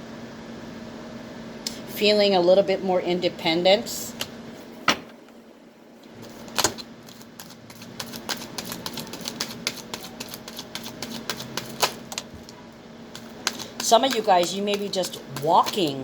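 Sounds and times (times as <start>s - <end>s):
cards being shuffled: 6.2s - 12.3s, 13.2s - 16.0s.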